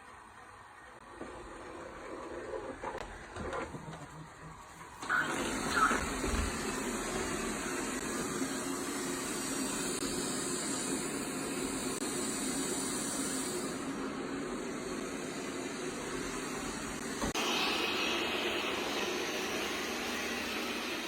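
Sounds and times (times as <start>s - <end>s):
robot vacuum whirring: 5.0s - 12.0s.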